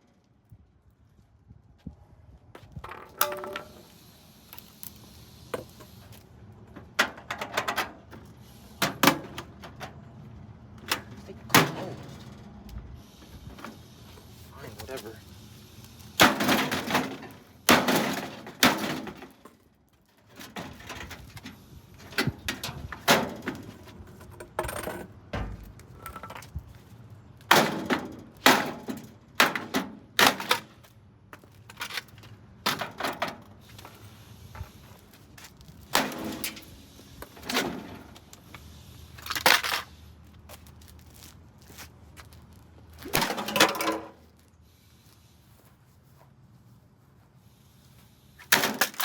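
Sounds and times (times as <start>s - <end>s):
hard blows on metal housing: 21.5s - 26.7s.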